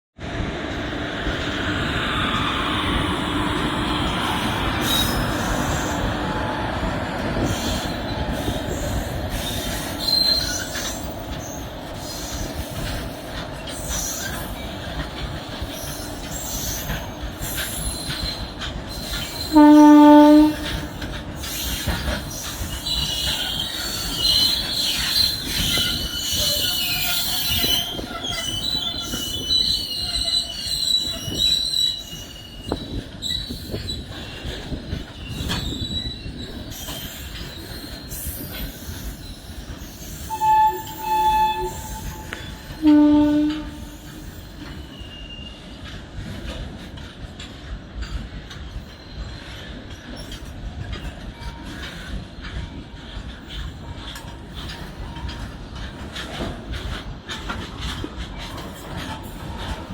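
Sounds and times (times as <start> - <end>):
goods train rumbling past: 0.2 - 59.9
train wheel squeal: 1.3 - 59.9
train horn blast: 19.5 - 21.0, 40.3 - 44.2.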